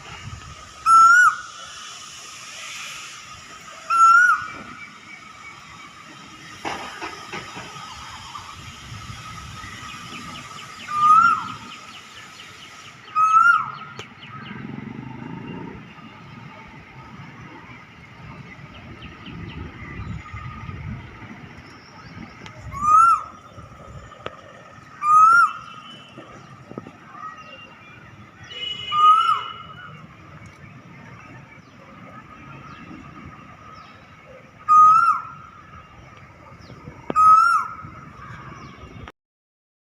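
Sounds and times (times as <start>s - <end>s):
cuckoo calling: 0.8s - 1.7s, 3.7s - 5.8s, 9.5s - 14.2s, 22.4s - 26.5s, 28.8s - 30.7s, 33.9s - 38.3s
bird chirping rapidly: 9.2s - 14.7s.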